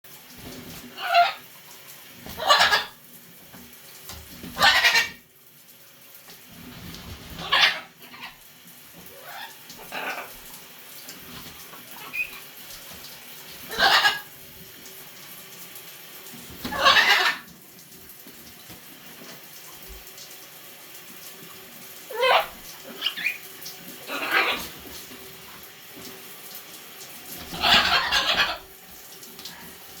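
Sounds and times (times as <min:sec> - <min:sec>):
macaw squawking: 0:02.4 - 0:02.9, 0:04.6 - 0:05.2, 0:13.7 - 0:14.3, 0:16.7 - 0:17.4, 0:22.1 - 0:23.4, 0:27.5 - 0:28.6.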